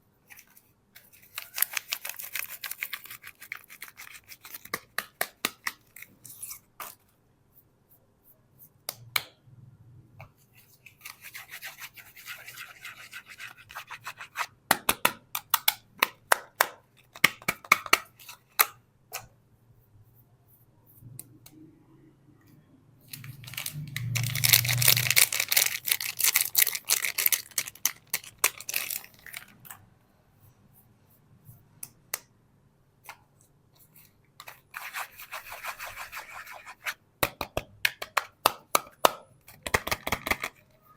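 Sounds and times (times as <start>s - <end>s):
soap wrapper crinkling: 1.1s - 4.8s, 23.1s - 29.6s
packaging tearing: 1.3s - 4.6s, 23.2s - 29.5s.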